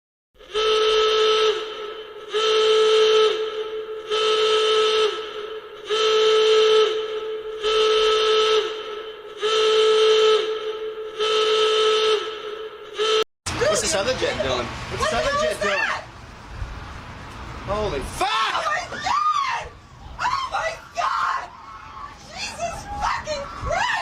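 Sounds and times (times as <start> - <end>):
whistle-like signal tone: 0.4 - 13.3.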